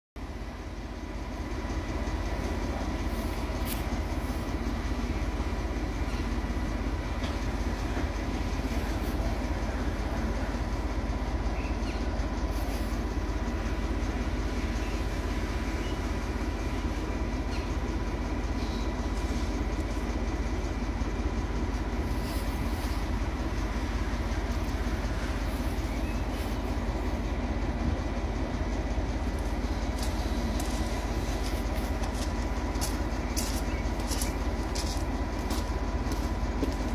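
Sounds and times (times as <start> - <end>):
locomotive diesel engine throbbing: 0.2 - 36.9.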